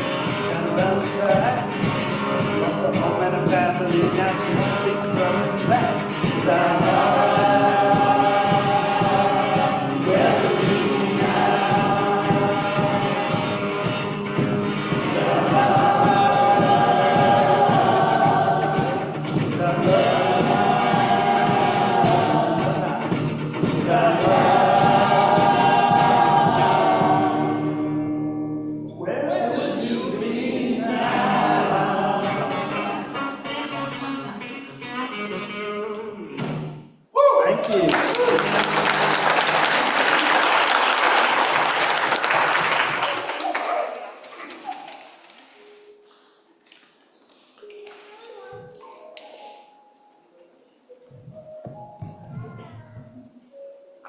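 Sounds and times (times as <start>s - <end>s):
group of voices singing: 0.0s - 27.9s, 29.0s - 34.9s
strummed guitar: 0.0s - 36.9s.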